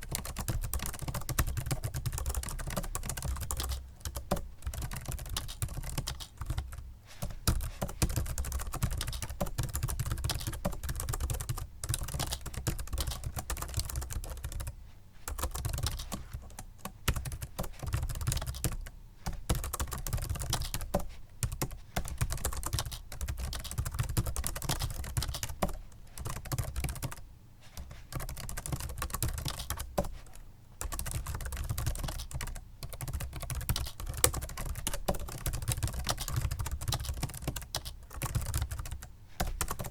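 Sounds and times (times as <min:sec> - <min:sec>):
rapid typing on keyboard: 0:00.0 - 0:39.9.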